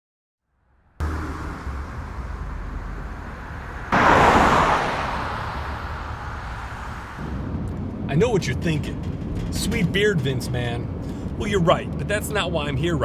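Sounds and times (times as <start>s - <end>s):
loud rush: 1.0s - 7.6s.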